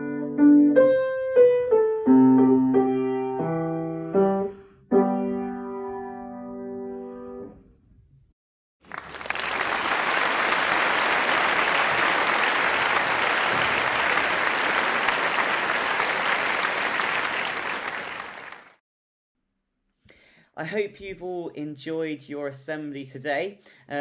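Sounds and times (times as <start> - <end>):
piano chord: 0.0 - 7.4
crowd applauding: 8.8 - 18.8.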